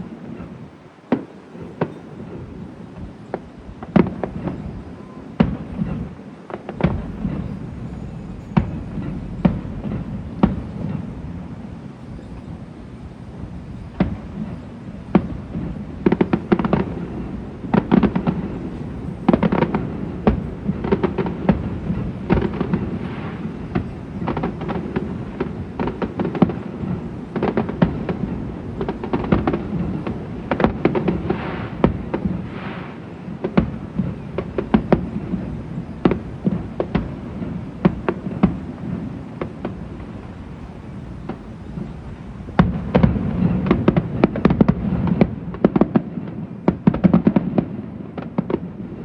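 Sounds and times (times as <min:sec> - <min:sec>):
fireworks bangs and crackling: 0:00.0 - 0:49.0
low rumble: 0:06.8 - 0:10.9.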